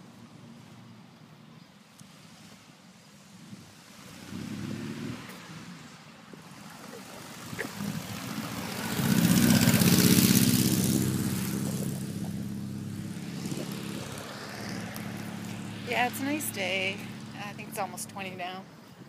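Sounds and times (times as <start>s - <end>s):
dune buggy engine driving past: 3.9s - 18.6s.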